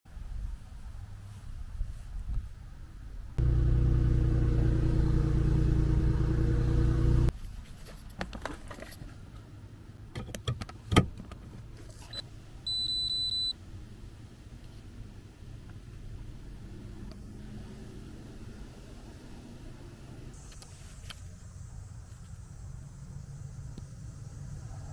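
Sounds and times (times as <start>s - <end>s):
car engine running: 3.4s - 7.3s.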